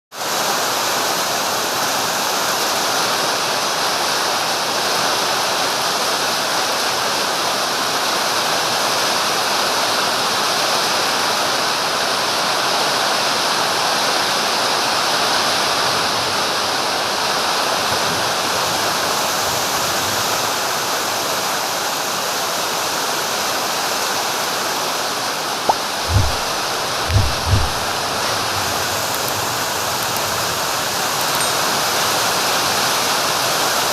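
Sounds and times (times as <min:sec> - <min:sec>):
low thumps: 0:25.7 - 0:28.0.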